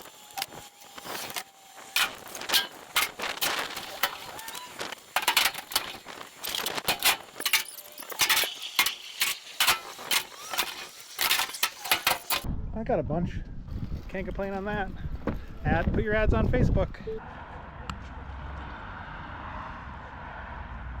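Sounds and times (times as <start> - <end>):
scrap metal clanking: 2.0 - 12.5.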